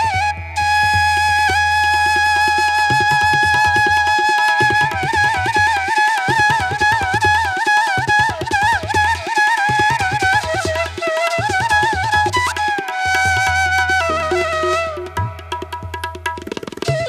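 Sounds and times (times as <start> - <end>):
ornamented melody line: 12.1 - 17.0.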